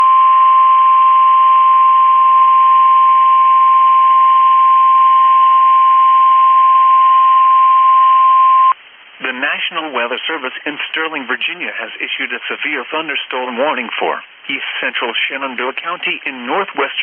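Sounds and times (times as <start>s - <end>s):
steady loud alarm tone: 0.0s - 8.8s
faint radio static: 9.2s - 17.0s.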